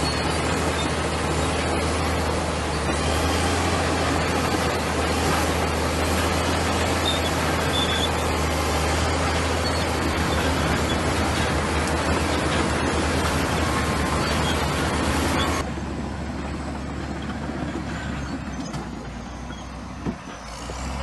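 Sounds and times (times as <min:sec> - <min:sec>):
bulldozer diesel engine running: 0:00.0 - 0:21.0.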